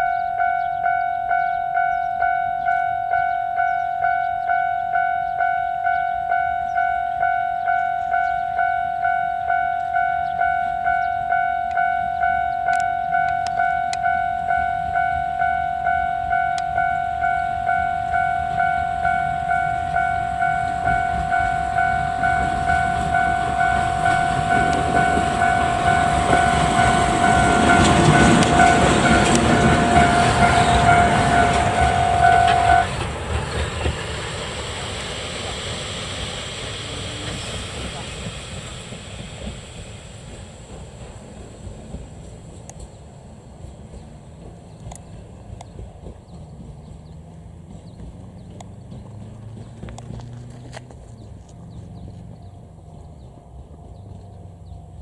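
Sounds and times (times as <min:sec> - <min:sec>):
level crossing alarm dinging: 0:00.0 - 0:33.1
train passing: 0:00.0 - 0:55.0.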